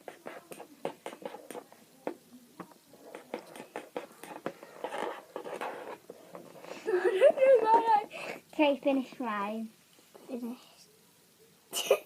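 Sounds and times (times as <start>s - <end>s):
pens scratching on paper: 0.0s - 6.9s.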